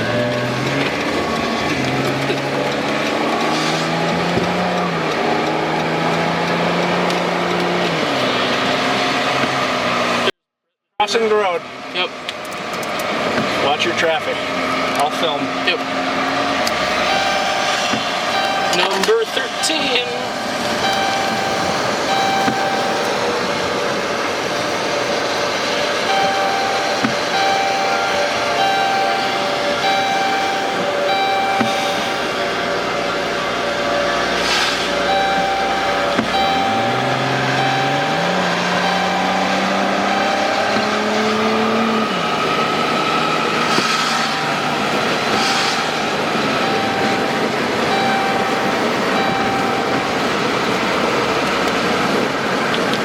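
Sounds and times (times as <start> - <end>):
car engine accelerating: 0.0 - 10.4, 11.0 - 53.0
road and wind noise: 0.0 - 10.4, 11.0 - 53.0
faint held tone: 26.0 - 40.8, 44.2 - 51.0.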